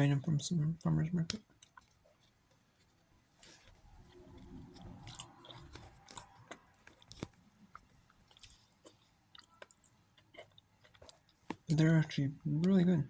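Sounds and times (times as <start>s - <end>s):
person chewing wetly: 1.4s - 11.8s.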